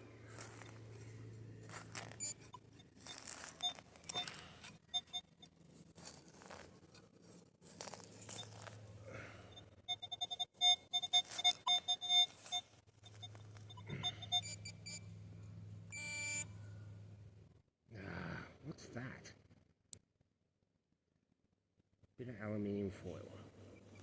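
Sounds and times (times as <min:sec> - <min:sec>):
metal detector beeping: 0:00.0 - 0:00.9, 0:01.6 - 0:06.7, 0:07.8 - 0:15.2, 0:15.9 - 0:16.6
scraping and digging: 0:00.0 - 0:09.1.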